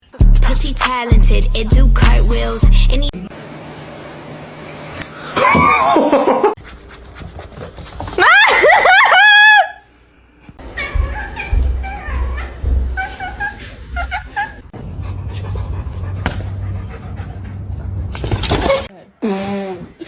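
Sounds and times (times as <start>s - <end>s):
person laughing and shrieking: 5.4s - 6.6s, 8.2s - 9.8s.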